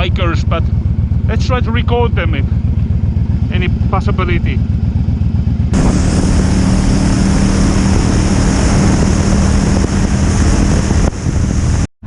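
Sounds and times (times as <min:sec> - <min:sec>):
motorcycle engine running: 0:00.0 - 0:11.9
wind rush on microphone: 0:05.7 - 0:11.9.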